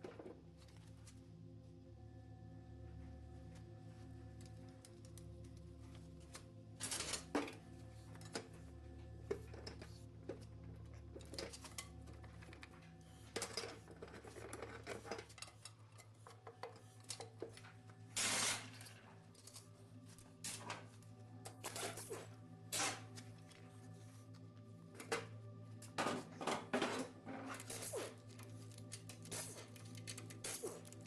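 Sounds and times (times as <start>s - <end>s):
low music drone: 0.0s - 31.0s.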